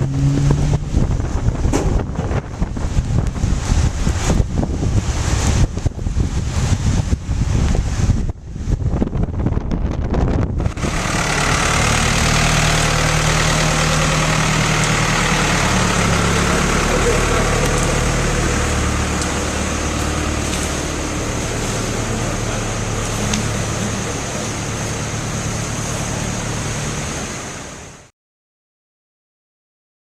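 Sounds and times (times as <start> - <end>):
vehicle engine running: 0.0 - 8.4, 9.7 - 28.1
wind buffeting microphone: 0.0 - 16.5
road noise: 0.0 - 28.1.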